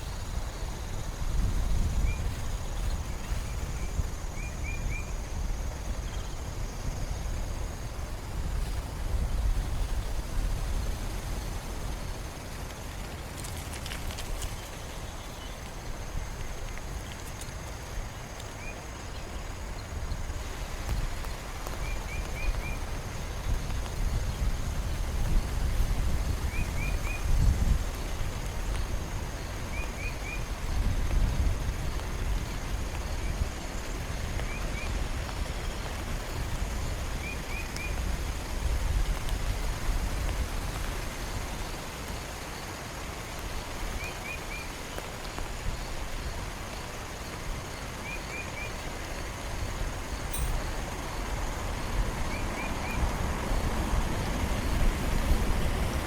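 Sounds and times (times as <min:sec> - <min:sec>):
heavy rain: 0:19.2 - 0:56.0.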